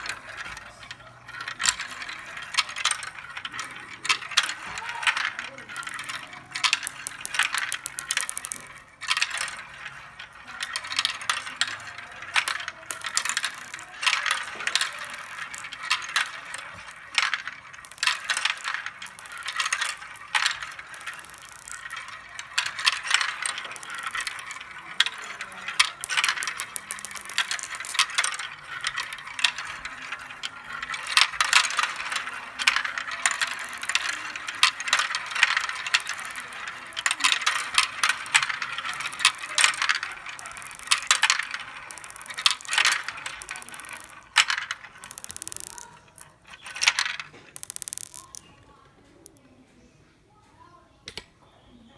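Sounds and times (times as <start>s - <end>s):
glass marbles rattling down track: 0.0s - 49.6s.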